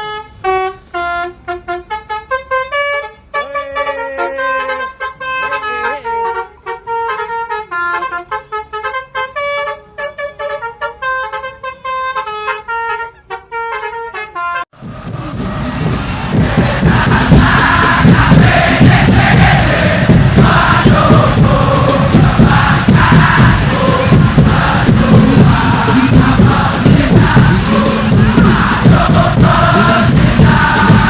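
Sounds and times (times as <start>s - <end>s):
bus horn playing staccato melody: 0.0s - 14.8s, 16.6s - 31.0s
loud crowd-like roar: 14.8s - 31.0s.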